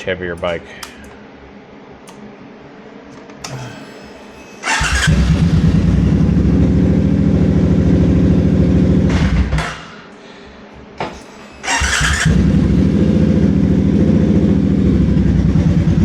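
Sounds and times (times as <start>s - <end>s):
motorcycle engine starting: 3.5s - 9.8s, 11.2s - 16.0s.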